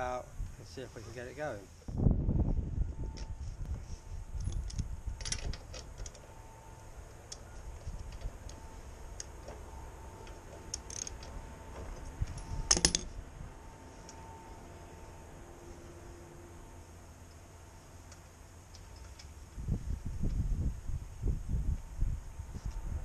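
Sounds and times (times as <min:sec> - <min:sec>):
metallic clicks of hand tools: 0:10.2 - 0:11.3.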